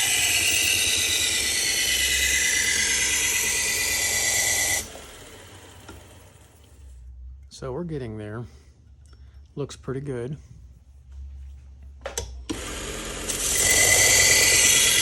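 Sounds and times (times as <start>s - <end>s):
belt grinder grinding knife blade: 0.0s - 4.9s, 13.2s - 15.0s.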